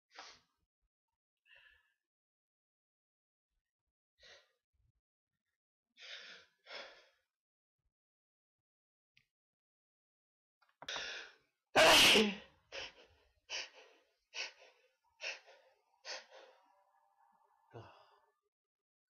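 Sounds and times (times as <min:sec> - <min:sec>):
person sneezing loudly: 0:11.8 - 0:12.4.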